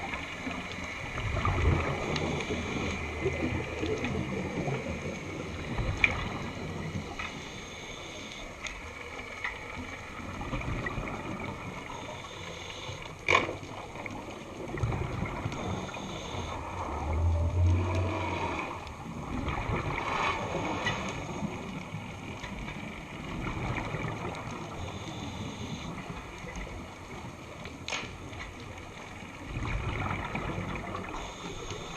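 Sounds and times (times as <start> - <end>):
underwater water noise: 0.0 - 31.9
low underwater rumble: 1.0 - 7.6, 13.5 - 25.0.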